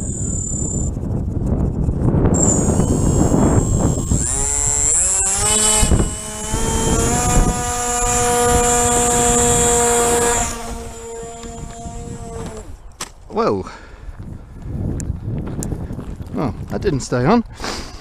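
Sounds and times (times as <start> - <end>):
electric motor and propeller whining: 0.0 - 13.0.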